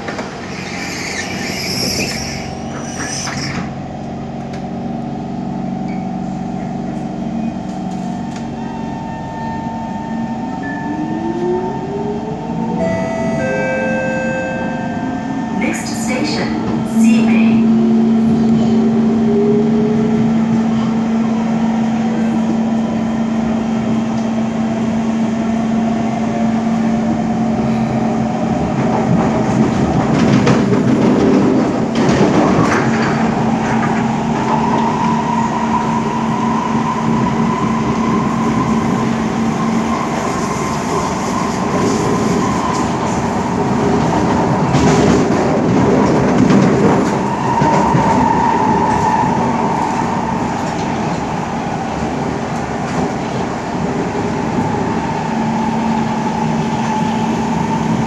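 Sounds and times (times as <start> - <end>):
wheel and rail noise: 0.0 - 4.7.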